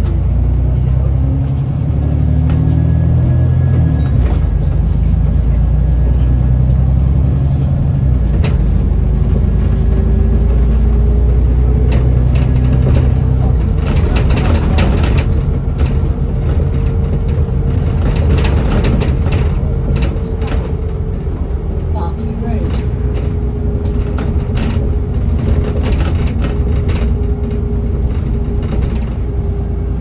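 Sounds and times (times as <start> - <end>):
bus engine running: 0.0 - 30.0
clicks and rattles: 11.8 - 21.5, 22.6 - 29.3.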